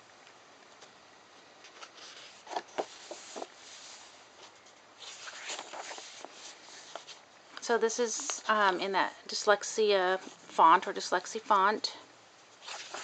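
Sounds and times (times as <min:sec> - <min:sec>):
book pages rustling: 0:00.7 - 0:07.3, 0:12.6 - 0:13.0.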